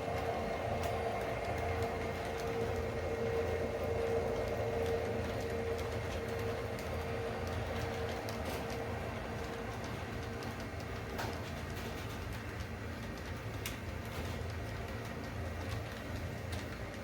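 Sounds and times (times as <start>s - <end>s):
steady whine: 0.0s - 12.2s
faint clicks from track: 0.0s - 17.0s
model locomotive engine rumble: 0.0s - 17.0s.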